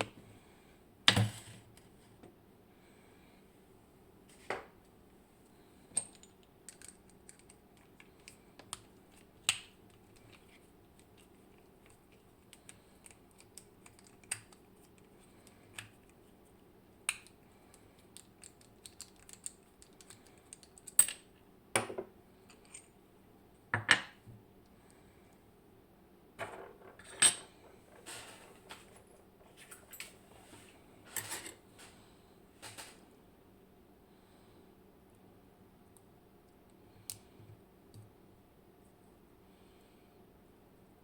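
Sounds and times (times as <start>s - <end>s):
lock and tools clicking: 6.0s - 8.8s, 18.2s - 21.3s.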